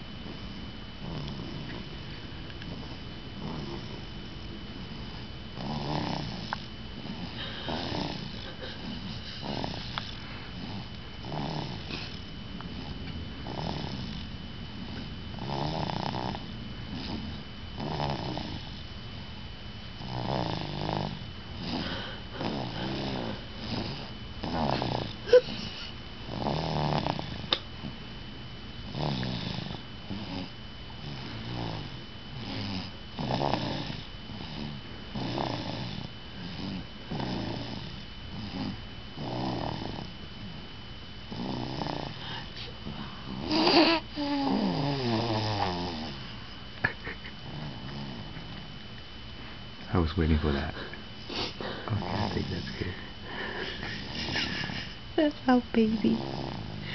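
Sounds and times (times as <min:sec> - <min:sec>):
person snoring: 0:01.0 - 0:01.8, 0:02.7 - 0:04.0, 0:05.6 - 0:12.2, 0:12.8 - 0:14.3, 0:14.9 - 0:18.9, 0:20.0 - 0:27.6, 0:28.9 - 0:40.1, 0:41.3 - 0:46.2, 0:46.8 - 0:48.6, 0:50.4 - 0:55.0, 0:56.0 - 0:56.9.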